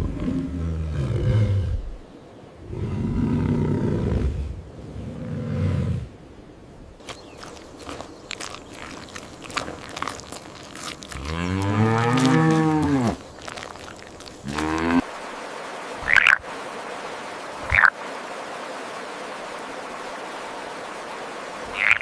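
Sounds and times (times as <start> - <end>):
cow mooing: 11.1 - 13.2, 14.4 - 15.1.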